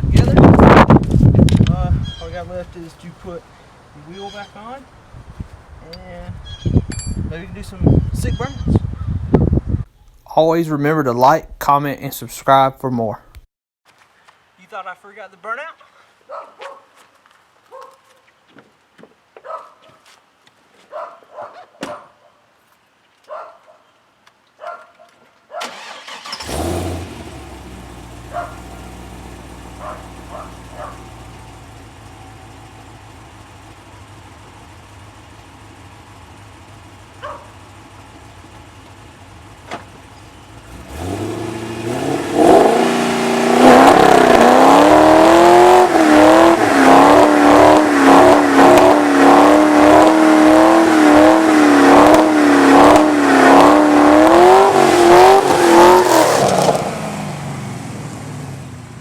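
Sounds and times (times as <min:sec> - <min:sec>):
car engine starting and revving: 0:25.6 - 0:59.0.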